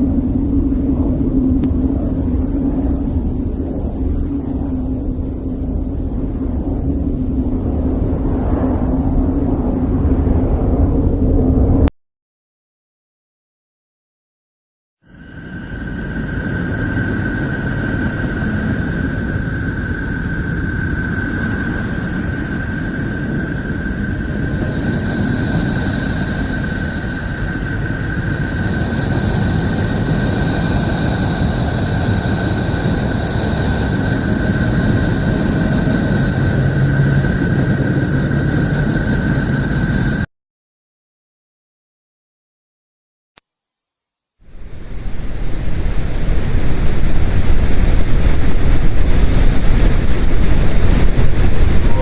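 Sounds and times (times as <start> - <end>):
low rumbling drone: 0.0 - 11.9, 15.1 - 40.3, 44.5 - 52.0
higher whistling tone: 15.1 - 29.8
high whistling tone: 15.1 - 40.3, 44.5 - 52.0.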